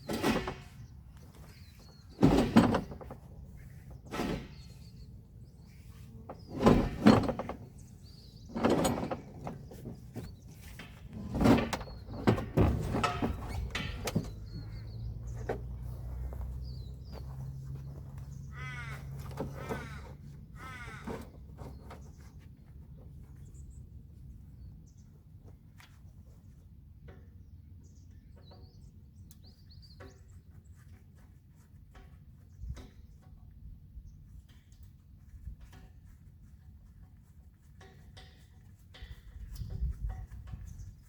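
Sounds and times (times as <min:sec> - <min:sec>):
metal parts clunking: 0:00.0 - 0:00.8, 0:02.2 - 0:03.1, 0:04.0 - 0:04.8, 0:06.4 - 0:07.8, 0:08.5 - 0:15.6
bird calling: 0:16.3 - 0:22.1.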